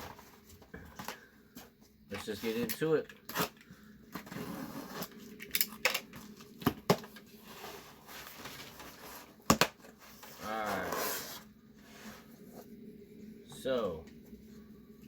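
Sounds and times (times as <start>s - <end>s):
cardboard box scraping and rustling: 4.2s - 5.2s, 7.4s - 12.3s.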